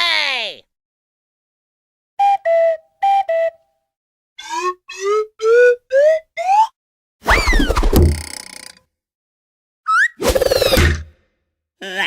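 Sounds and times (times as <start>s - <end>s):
upward-sliding whistle notes: 2.2s - 3.7s, 4.4s - 6.7s.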